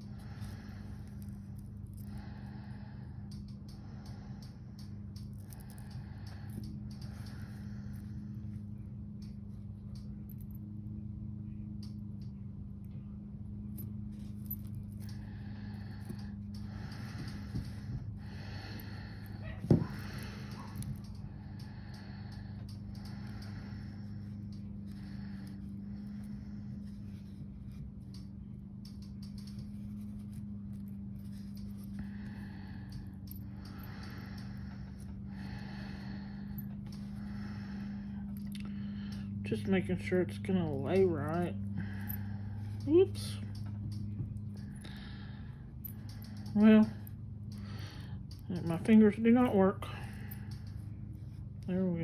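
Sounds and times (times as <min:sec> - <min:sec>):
heavy breathing: 0:00.0 - 0:12.3, 0:12.9 - 0:51.7
steady low hum: 0:00.0 - 0:52.0
metal beads clicking: 0:03.3 - 0:08.1.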